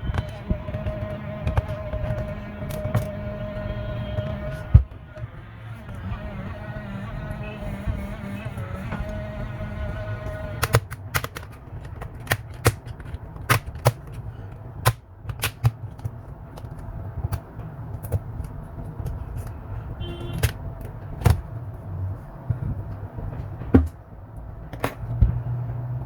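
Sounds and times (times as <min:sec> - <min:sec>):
plastic case clicks and snaps: 0:10.6 - 0:14.2, 0:14.8 - 0:17.4.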